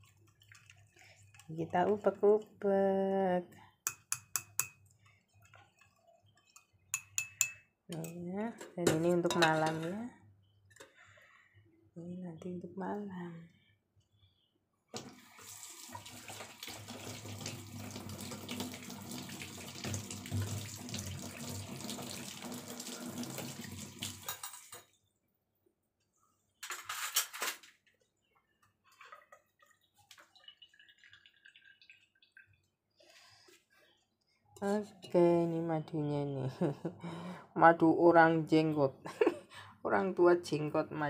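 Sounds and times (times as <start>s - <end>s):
tap running into a sink: 15.9s - 24.3s.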